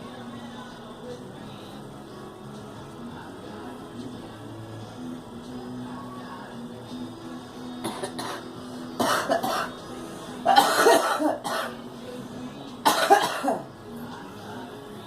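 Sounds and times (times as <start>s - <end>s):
girl coughing: 7.8s - 9.8s, 10.5s - 11.8s, 12.8s - 13.6s.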